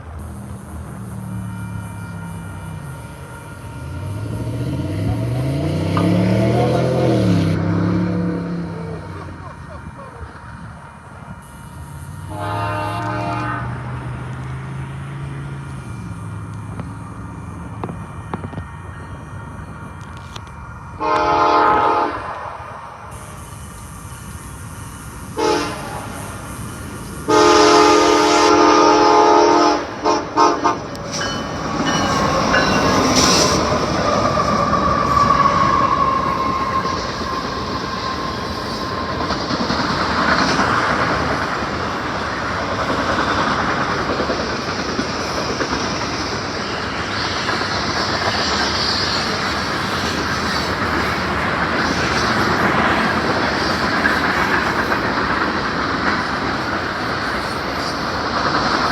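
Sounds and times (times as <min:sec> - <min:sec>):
train air horn: 0:00.0 - 0:14.2, 0:20.0 - 0:42.1
train wheels rumbling on rails: 0:00.0 - 0:58.9.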